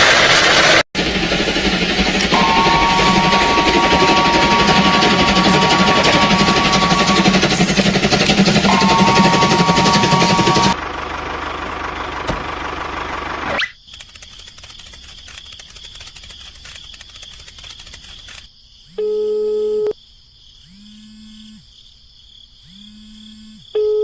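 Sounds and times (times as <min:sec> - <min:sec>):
loud noisy sound: 0:00.0 - 0:12.0
faint high chirring: 0:02.3 - 0:10.8
telephone calling tone beeps: 0:19.0 - 0:20.0, 0:23.8 - 0:24.0.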